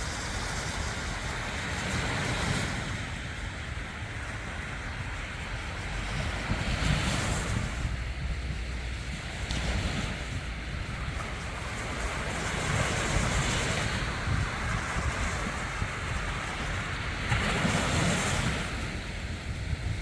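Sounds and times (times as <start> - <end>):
sea waves washing onto beach: 0.0 - 20.0
wind buffeting microphone: 0.0 - 20.0.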